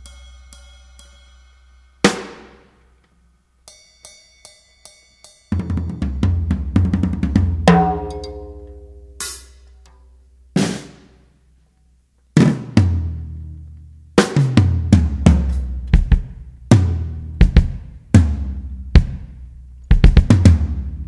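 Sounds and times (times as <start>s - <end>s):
ringing pitched note: 0.0s - 2.3s, 3.6s - 6.2s, 7.7s - 9.2s
kick and snare drum hits: 7.7s - 8.5s.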